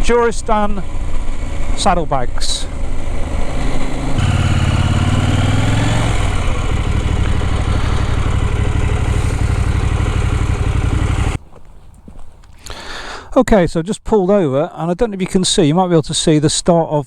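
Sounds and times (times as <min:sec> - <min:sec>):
motorcycle engine accelerating: 0:00.0 - 0:12.8.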